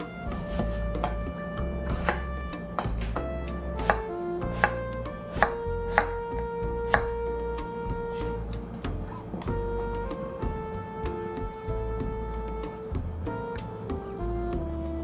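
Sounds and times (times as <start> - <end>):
knife chopping on cutting board: 0.2 - 7.3.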